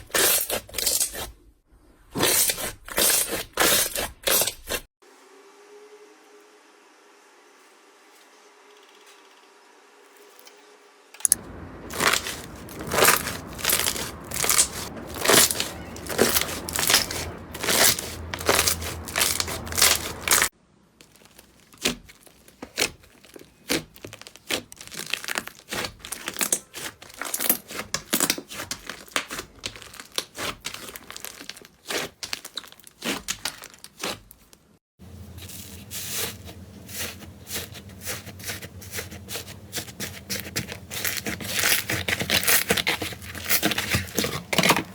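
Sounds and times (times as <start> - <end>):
slime crackling and popping: 11.2 - 34.5, 40.0 - 44.6.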